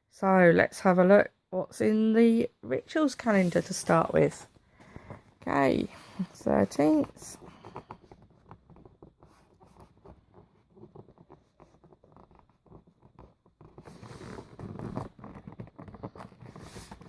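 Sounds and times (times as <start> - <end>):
scratching and clicks on cardboard: 4.4 - 17.0
cardboard rustling and tearing: 9.8 - 17.0.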